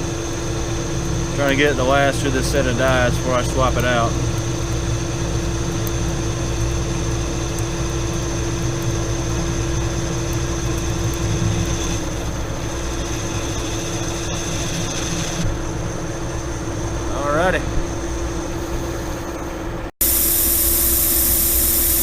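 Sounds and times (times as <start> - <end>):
metal lathe rumble and whine: 0.0 - 22.0.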